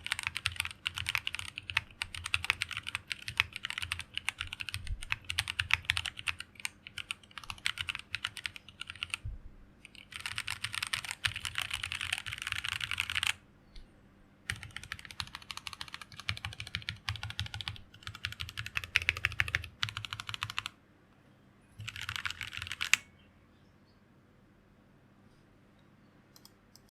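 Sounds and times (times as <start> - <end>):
typing on mechanical keyboard: 0.0 - 9.2, 9.9 - 13.4, 14.5 - 20.7, 21.8 - 23.0.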